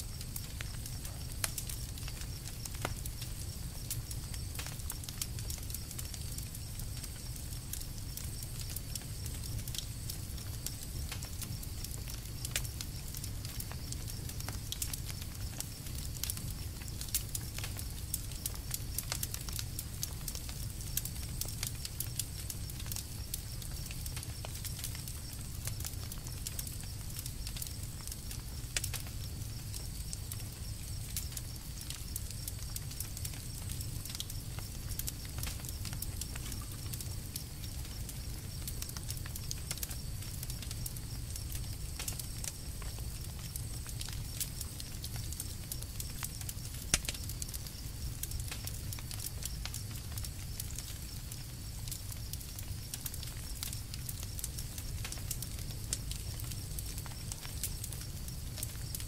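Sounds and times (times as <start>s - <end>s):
low rumble of flames: 0.0s - 59.0s
wood crackling and popping: 0.0s - 59.0s.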